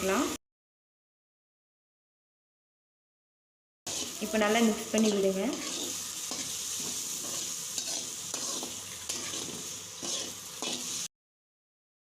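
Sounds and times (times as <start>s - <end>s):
vegetables sizzling in oil: 0.0s - 0.4s, 3.9s - 11.1s
spatula scraping a pan: 3.9s - 11.1s.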